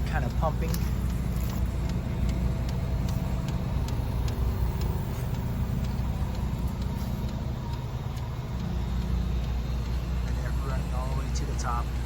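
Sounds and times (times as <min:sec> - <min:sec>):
fuel pump ticking: 0:00.0 - 0:12.0.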